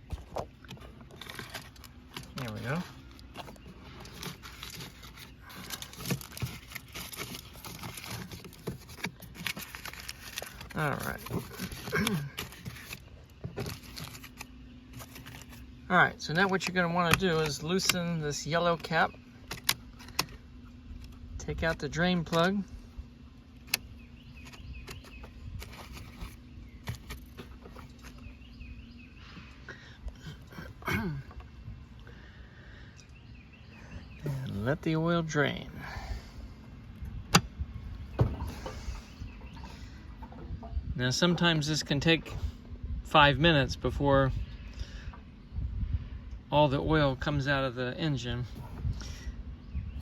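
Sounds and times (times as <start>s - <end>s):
aluminium foil crinkling: 1.0s - 15.7s.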